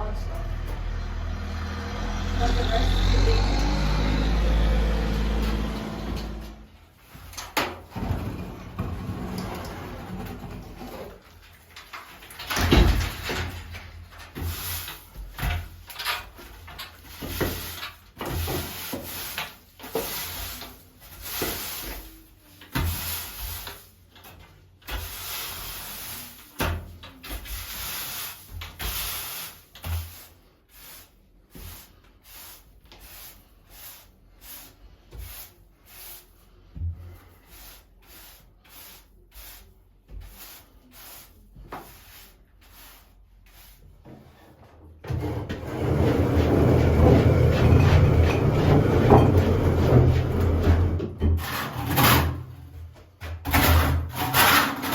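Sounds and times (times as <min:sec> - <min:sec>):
rubbing and scraping: 0:01.4 - 0:52.6, 0:53.4 - 0:54.9
objects knocking: 0:45.1 - 0:52.4.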